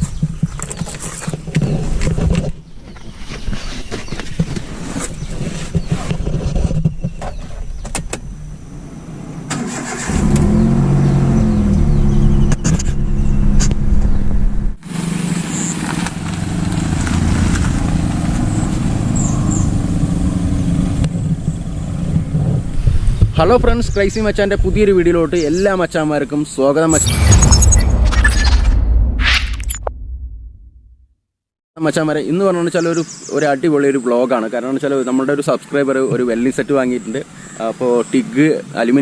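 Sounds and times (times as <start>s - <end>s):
car engine starting and running: 7.7s - 22.8s.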